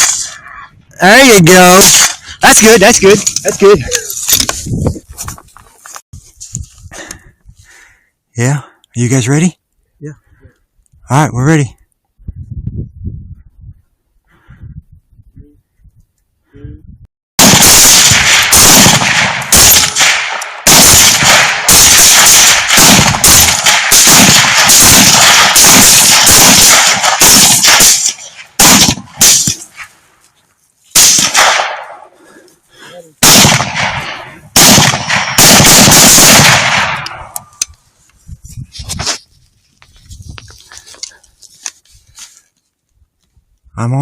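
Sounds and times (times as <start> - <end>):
rifles firing: 17.4 - 29.7, 31.0 - 32.0, 33.2 - 37.3.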